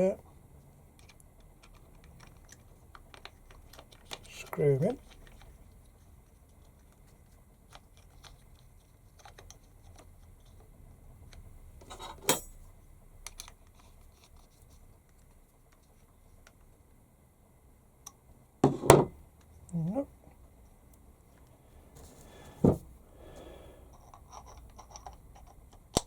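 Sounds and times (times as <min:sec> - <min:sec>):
metal parts clicking and tapping: 0:23.9 - 0:26.0.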